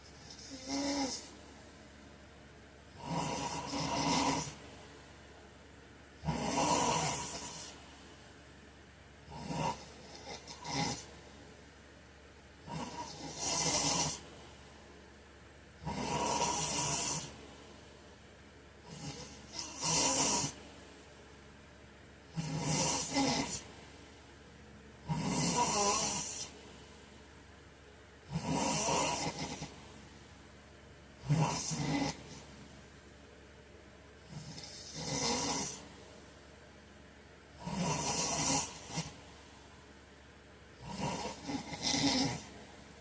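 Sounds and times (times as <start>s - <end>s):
man snoring: 0.1s - 1.3s, 2.9s - 4.6s, 6.2s - 7.8s, 9.3s - 11.1s, 12.6s - 14.3s, 15.8s - 17.4s, 18.8s - 20.6s, 22.3s - 23.6s, 25.0s - 26.6s, 28.3s - 29.8s, 31.2s - 32.5s, 34.2s - 35.9s, 37.6s - 39.2s, 40.8s - 42.6s.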